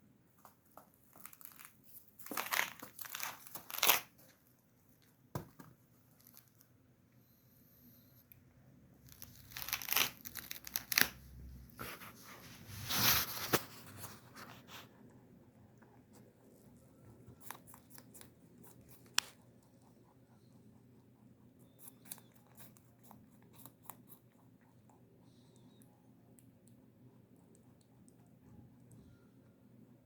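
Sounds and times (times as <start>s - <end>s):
small clicks and crunches: 0.4s - 5.1s, 9.0s - 11.2s.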